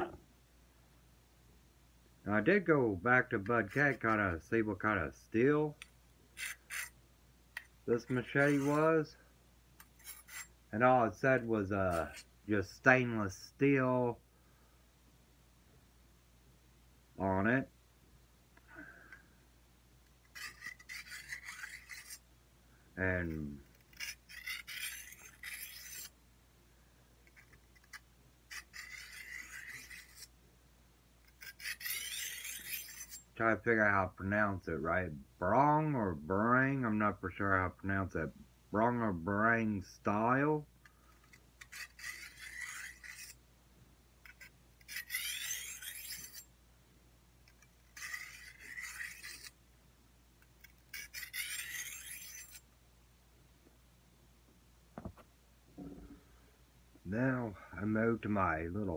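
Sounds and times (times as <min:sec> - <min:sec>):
sharpening stone scraping blade: 0:06.4 - 0:07.0, 0:07.6 - 0:08.9, 0:09.8 - 0:10.5, 0:11.4 - 0:12.3, 0:20.2 - 0:22.2, 0:23.3 - 0:26.2, 0:27.2 - 0:30.3, 0:31.2 - 0:33.3, 0:41.1 - 0:43.4, 0:44.2 - 0:46.5, 0:47.4 - 0:49.6, 0:50.5 - 0:52.6.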